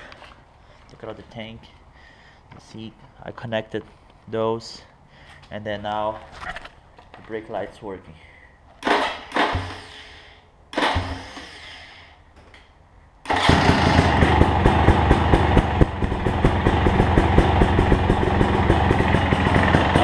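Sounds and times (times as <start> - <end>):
short noises: 8.8 - 12.6
two-stroke engine idling: 13.3 - 20.0.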